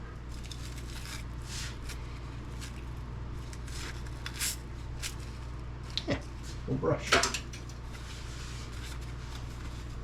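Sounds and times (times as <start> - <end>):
steady low hum: 0.0 - 10.0
scratchy brush rubbing strokes: 1.1 - 2.0.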